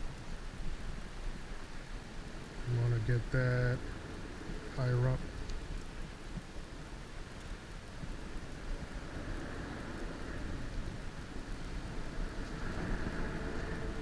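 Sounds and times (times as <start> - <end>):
wind buffeting microphone: 0.0 - 14.0
surf rushing: 7.7 - 14.0.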